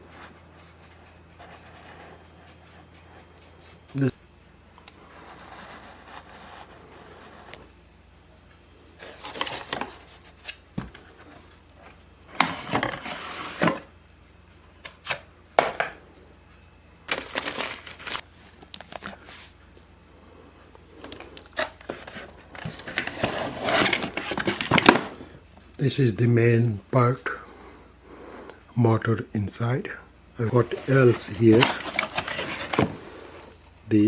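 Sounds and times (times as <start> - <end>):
cardboard and plastic rustling: 9.0 - 13.9, 17.1 - 19.6, 21.0 - 25.4, 30.4 - 33.6.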